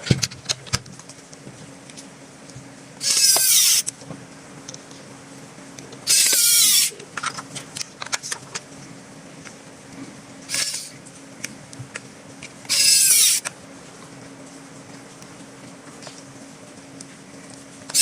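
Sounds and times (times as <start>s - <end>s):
toy gun noisy bursts: 3.0s - 3.8s, 6.1s - 6.9s, 10.5s - 10.9s, 12.7s - 13.5s
small mechanical clicks: 3.0s - 3.9s, 6.1s - 8.4s, 10.5s - 10.9s, 12.7s - 13.5s.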